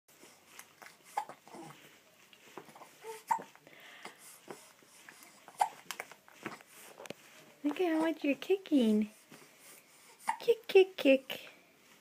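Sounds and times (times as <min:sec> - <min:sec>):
baby hiccuping: 0:01.1 - 0:01.4, 0:03.0 - 0:03.5, 0:05.5 - 0:05.8, 0:10.2 - 0:10.5.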